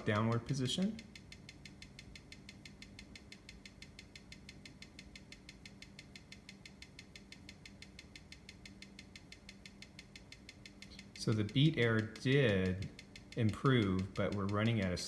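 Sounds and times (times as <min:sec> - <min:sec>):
watch ticking: 0:00.0 - 0:15.0.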